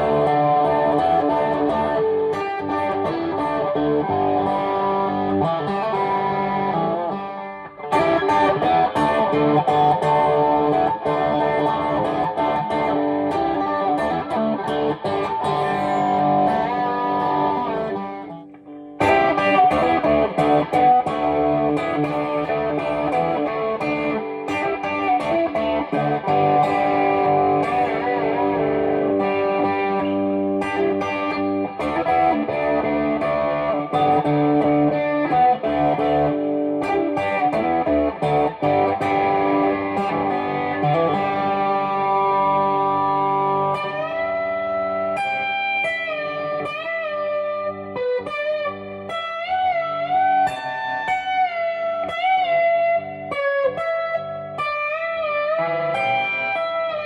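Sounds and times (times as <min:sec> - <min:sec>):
electric guitar playing chords: 0:00.0 - 0:57.0.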